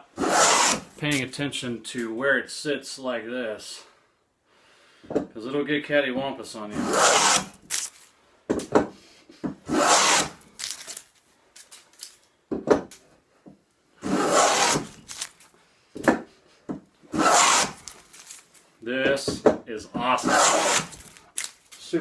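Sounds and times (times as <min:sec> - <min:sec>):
hand plane shaving wood: 0:00.2 - 0:01.0, 0:06.7 - 0:07.6, 0:09.7 - 0:10.4, 0:14.0 - 0:15.0, 0:17.1 - 0:17.9, 0:20.2 - 0:21.0.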